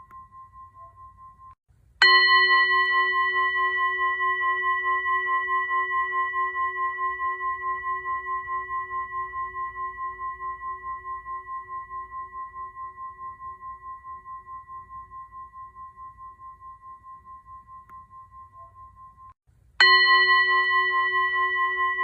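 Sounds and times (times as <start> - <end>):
singing bowl ringing: 0.0 - 22.0.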